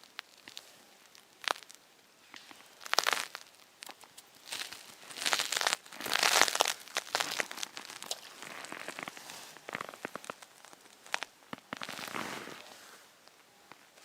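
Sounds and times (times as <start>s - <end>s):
footsteps crunching in snow: 4.4s - 13.1s.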